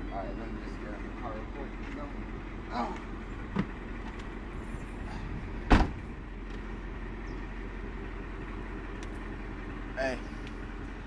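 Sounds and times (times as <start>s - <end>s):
car engine rumble: 0.0s - 11.0s
loud thump: 5.6s - 6.2s.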